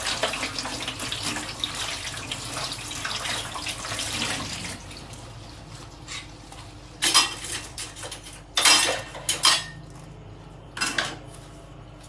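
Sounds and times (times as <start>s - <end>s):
dishes and cutlery clattering: 7.0s - 9.9s, 10.8s - 11.2s.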